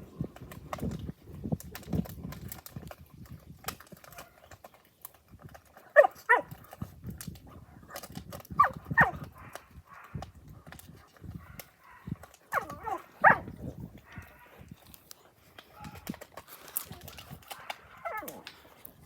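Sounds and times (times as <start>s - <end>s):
puppy whining: 5.9s - 6.6s, 8.5s - 9.3s, 11.9s - 14.2s, 17.9s - 18.8s
puppy grumbling: 12.5s - 14.3s, 18.0s - 18.5s.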